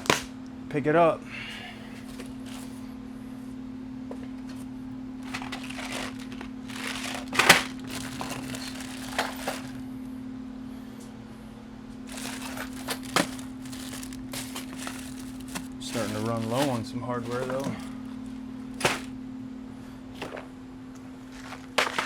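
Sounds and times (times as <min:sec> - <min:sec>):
steady low hum: 0:00.0 - 0:22.0
packaging rustling and crinkling: 0:05.2 - 0:09.8, 0:12.1 - 0:19.2, 0:21.4 - 0:22.0.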